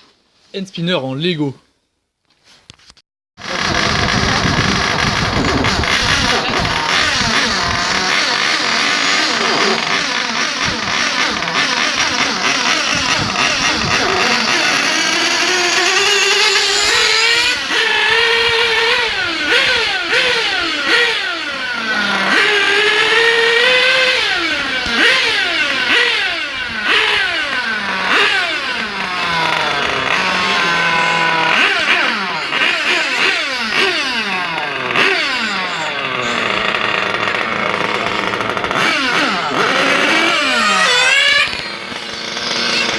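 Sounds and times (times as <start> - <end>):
hand spinner whining: 3.4 - 42.9.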